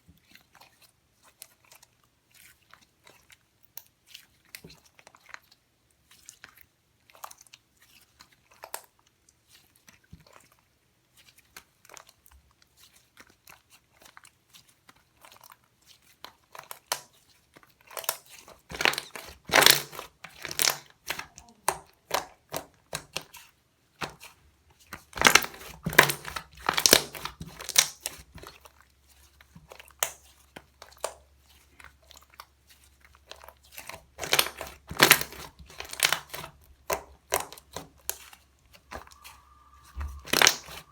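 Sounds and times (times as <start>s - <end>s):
slime squeezed and stretched: 17.8s - 24.4s, 25.0s - 28.6s, 29.7s - 40.9s.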